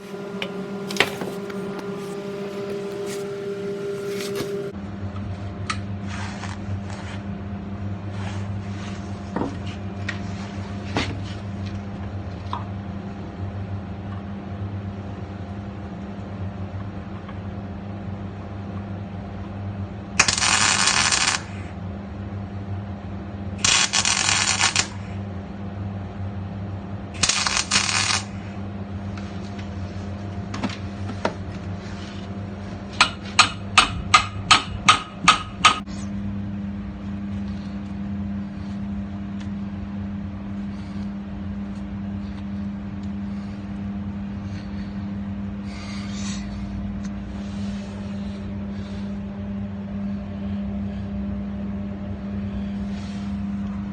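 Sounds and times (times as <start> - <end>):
steady low hum: 0.0 - 4.8, 28.4 - 53.9
metal hammer strikes: 33.0 - 35.8.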